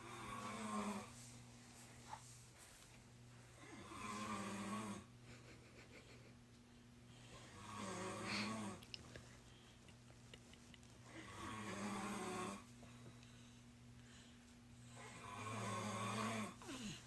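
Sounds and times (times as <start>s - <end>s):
person snoring: 0.0s - 1.2s, 3.6s - 5.1s, 7.4s - 8.8s, 11.1s - 12.7s, 14.9s - 17.0s
faint steady hum: 0.0s - 17.0s.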